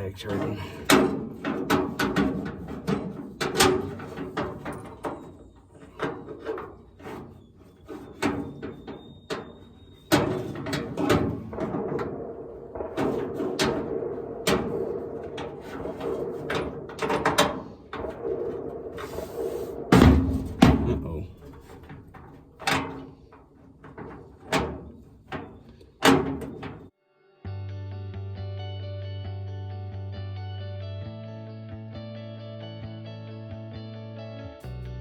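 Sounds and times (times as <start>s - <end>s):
metal knocks and clanks: 0.0s - 26.9s
music: 27.0s - 35.0s.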